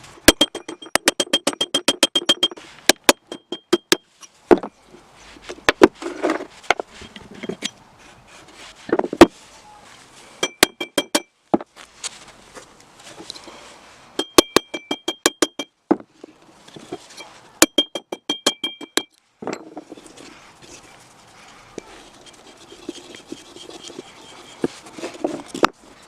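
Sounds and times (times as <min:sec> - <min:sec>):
ringing metallic clicks: 0:00.3 - 0:02.6, 0:03.2 - 0:04.0, 0:17.6 - 0:19.2
metal scraping: 0:16.2 - 0:25.9.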